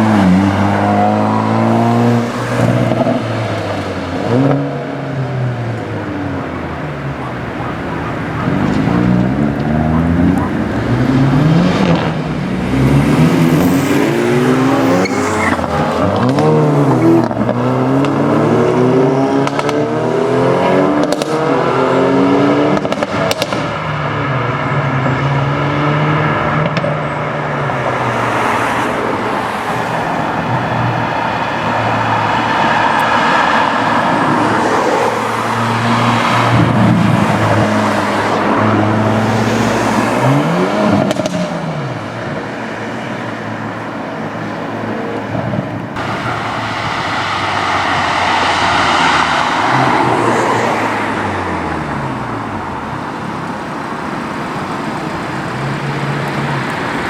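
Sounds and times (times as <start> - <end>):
car engine revving: 0.0 - 57.0
exhaust pops: 5.6 - 12.6, 22.7 - 23.8, 40.8 - 42.4.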